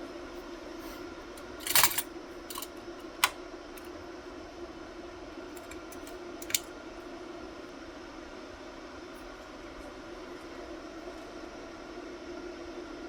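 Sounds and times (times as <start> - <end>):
computer hardware clicking and rattling: 1.4 - 3.4, 5.6 - 6.7.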